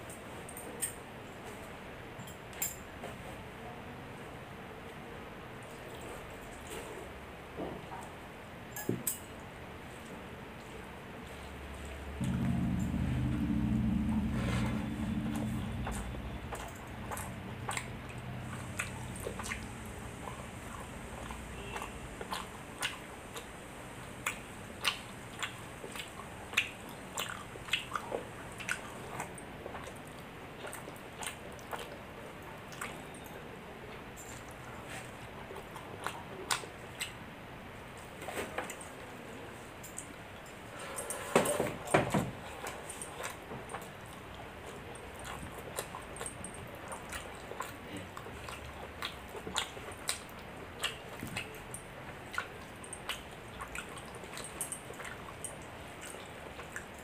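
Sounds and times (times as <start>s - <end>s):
wet chewing with smacking: 14.6s - 37.2s, 42.6s - 57.0s.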